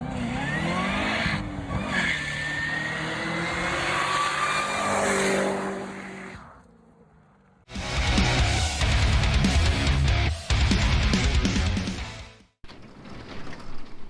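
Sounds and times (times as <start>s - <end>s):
car engine revving: 0.0s - 7.7s.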